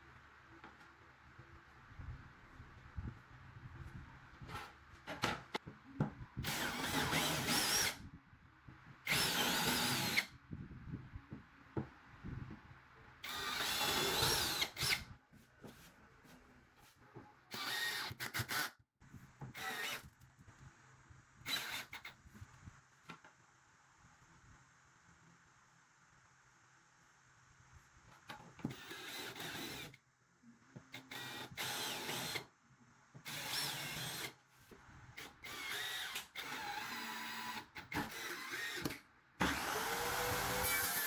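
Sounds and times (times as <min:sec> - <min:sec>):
power drill motor whine: 0:06.4 - 0:08.0, 0:09.1 - 0:10.3, 0:13.2 - 0:15.0, 0:17.5 - 0:18.7, 0:19.6 - 0:20.1, 0:21.5 - 0:22.1, 0:28.6 - 0:30.0, 0:31.0 - 0:32.5, 0:33.3 - 0:34.3, 0:35.2 - 0:41.0.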